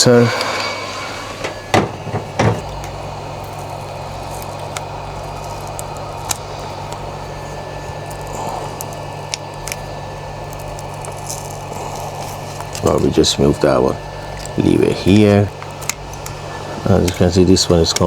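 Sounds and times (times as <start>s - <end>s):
heat gun blowing with low hum: 0.0s - 18.0s.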